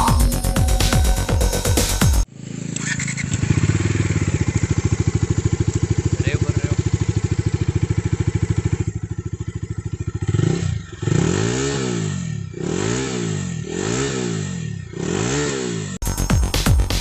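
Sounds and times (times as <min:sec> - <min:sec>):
electronic music: 0:00.0 - 0:02.3, 0:16.0 - 0:17.0
motorcycle engine idling and revving: 0:00.0 - 0:17.0.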